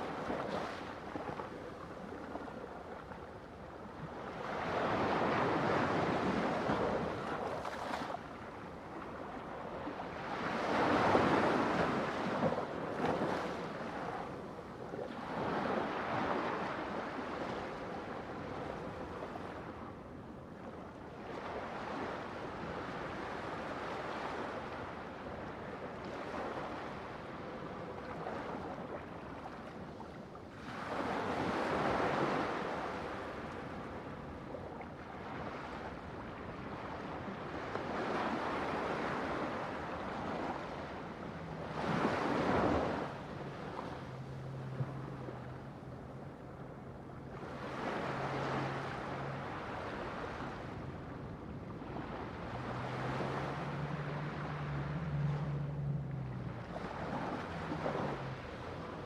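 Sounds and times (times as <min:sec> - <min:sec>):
surf washing: 0:30.4 - 0:59.0
ocean waves breaking: 0:35.1 - 0:59.0.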